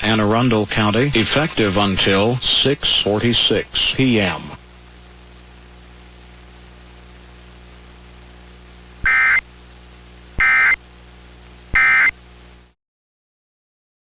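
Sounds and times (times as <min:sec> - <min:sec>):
receiver hiss and hum: 0:00.0 - 0:12.8
buzzy digital squawks: 0:09.0 - 0:09.4, 0:10.4 - 0:10.8, 0:11.8 - 0:12.2.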